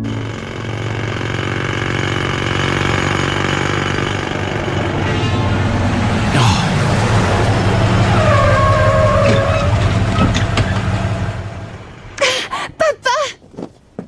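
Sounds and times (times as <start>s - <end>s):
low engine hum: 0.0s - 14.0s.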